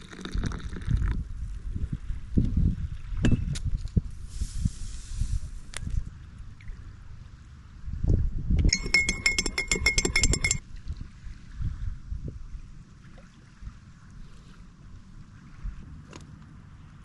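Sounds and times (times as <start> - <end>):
low wind rumble: 0.5 - 9.0, 10.6 - 14.0
spoon clinking in coffee cup: 8.7 - 10.6.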